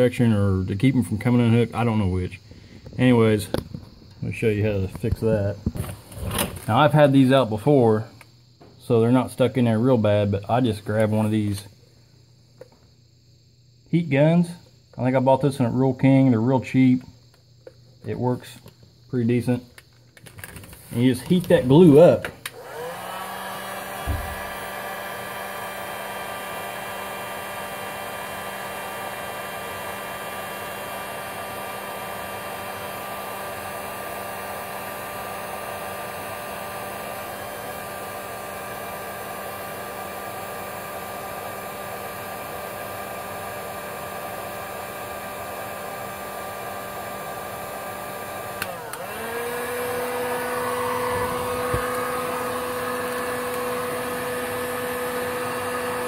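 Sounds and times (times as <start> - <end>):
heat gun blowing: 20.9 - 56.0.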